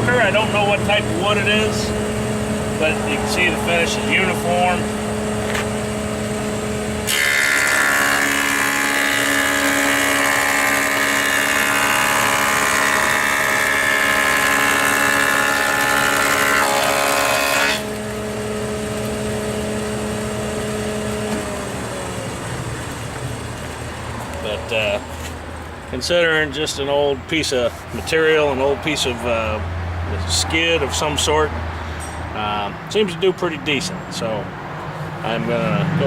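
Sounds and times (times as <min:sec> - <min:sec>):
motor winding down: 0:00.0 - 0:25.0
thickness planer running: 0:00.0 - 0:26.0.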